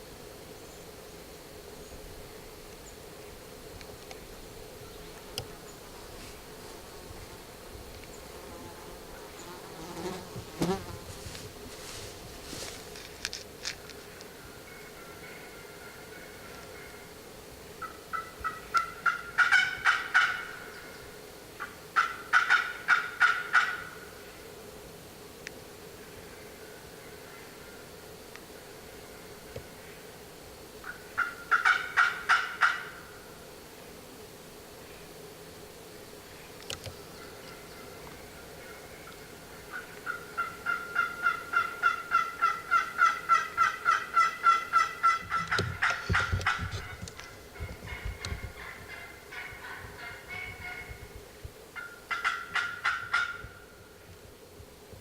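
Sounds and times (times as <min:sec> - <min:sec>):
turkey yelps: 0:17.8 - 0:20.5, 0:22.0 - 0:23.9, 0:31.2 - 0:32.9, 0:40.0 - 0:46.6, 0:51.8 - 0:53.5.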